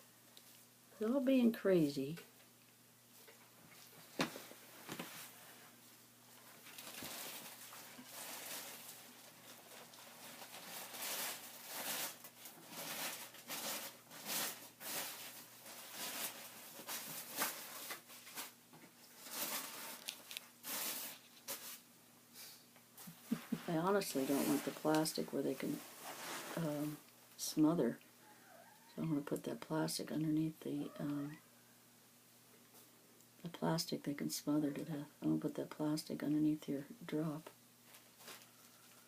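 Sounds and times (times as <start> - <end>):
plastic crinkling: 6.4 - 21.8, 37.8 - 39.0
kittens scrambling and playing: 6.5 - 21.8.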